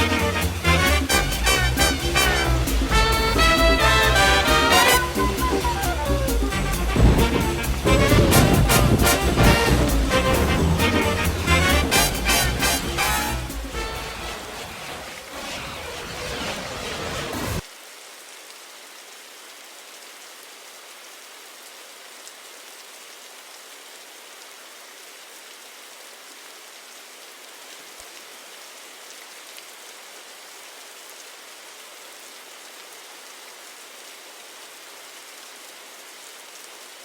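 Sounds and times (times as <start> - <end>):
rain hissing: 0.0 - 18.4.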